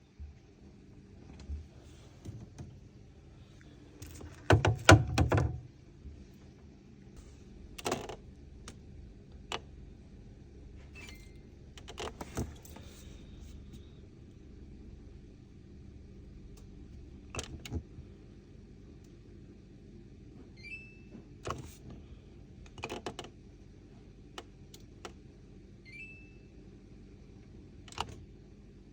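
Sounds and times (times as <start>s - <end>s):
refrigerator clicks and knocks: 4.0s - 5.7s
faint short high tone: 25.8s - 26.5s.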